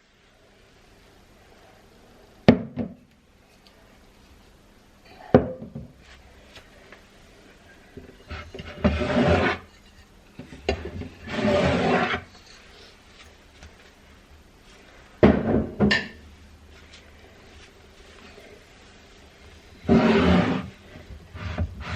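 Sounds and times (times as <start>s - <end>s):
scraping or rustling: 8.0s - 14.0s, 19.6s - 21.9s.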